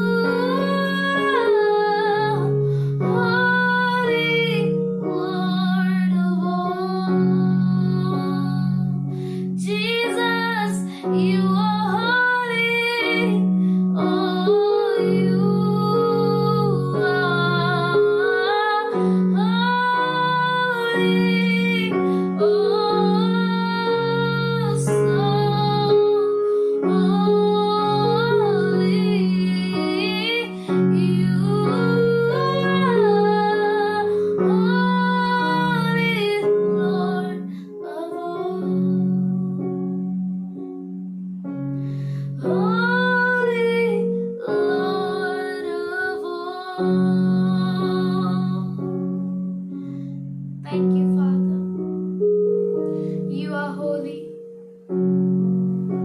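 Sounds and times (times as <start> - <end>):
sustained keyboard chords: 0.0 - 56.0
woman singing slowly: 9.6 - 40.0, 42.4 - 48.8, 50.6 - 51.7.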